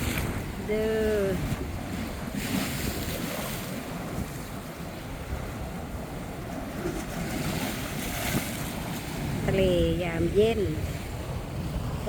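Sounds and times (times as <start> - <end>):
sea waves washing onto beach: 0.0 - 12.0
wind rumbling on microphone: 0.0 - 12.0.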